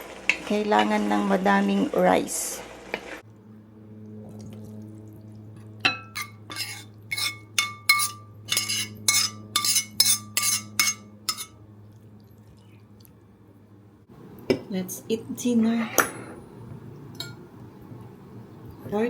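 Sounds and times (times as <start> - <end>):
steady low hum: 0.0 - 19.0
utensil clinking against dishes: 5.8 - 11.6.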